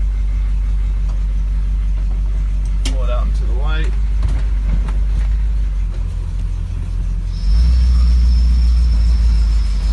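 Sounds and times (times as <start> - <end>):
engine low rumble: 0.0 - 9.9
thin high whine: 6.5 - 9.9.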